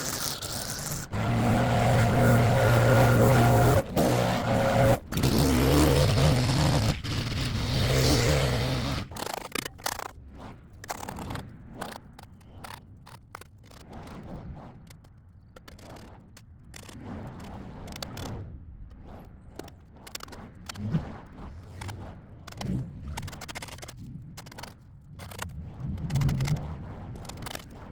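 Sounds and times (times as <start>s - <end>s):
small engine tool humming: 0.0s - 9.1s
tool scraping on pavement: 0.0s - 9.1s
scrapes and clicks on sidewalk: 0.0s - 20.8s, 21.6s - 27.9s.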